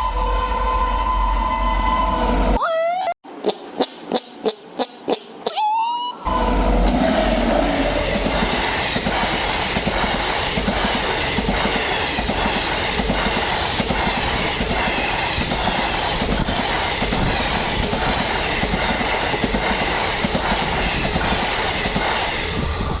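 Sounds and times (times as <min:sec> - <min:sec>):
train passing at speed: 0:00.0 - 0:02.6, 0:06.3 - 0:23.0
wheels clacking over rail joints: 0:06.3 - 0:22.6.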